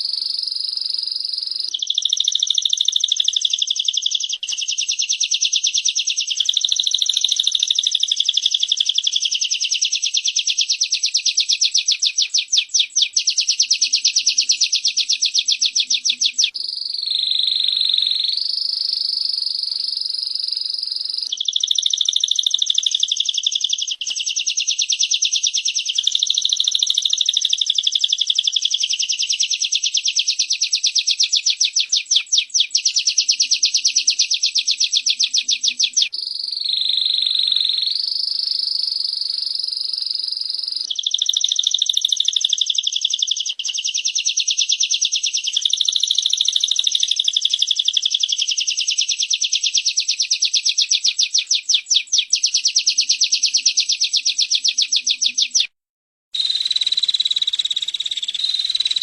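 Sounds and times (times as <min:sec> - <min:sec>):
bird buzzing trill: 0:56.4 - 0:59.0.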